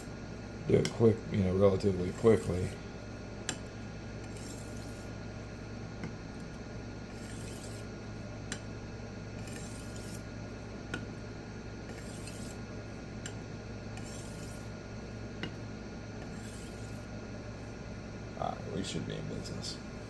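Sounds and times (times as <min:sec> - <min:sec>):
steady low hum: 0:00.0 - 0:20.0
knife scraping on sharpening stone: 0:04.2 - 0:05.0, 0:07.1 - 0:07.8, 0:09.4 - 0:10.2, 0:11.9 - 0:12.6, 0:14.0 - 0:14.6, 0:16.2 - 0:17.0.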